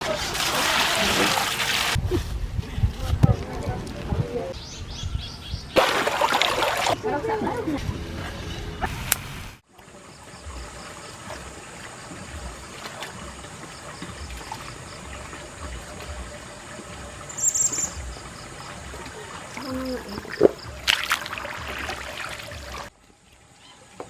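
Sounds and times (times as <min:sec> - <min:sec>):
water trickling: 0:09.6 - 0:24.0.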